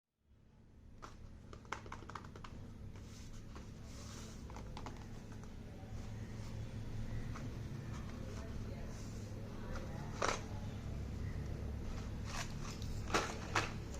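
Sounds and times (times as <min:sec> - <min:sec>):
low steady hum: 0:00.2 - 0:13.9
packaging clicks and taps: 0:01.0 - 0:02.6, 0:04.4 - 0:05.6
packaging rustle: 0:11.9 - 0:13.9.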